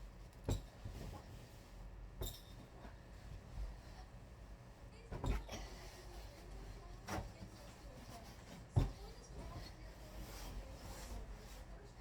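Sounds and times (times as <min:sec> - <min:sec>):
soft dull thump: 0:08.7 - 0:09.6.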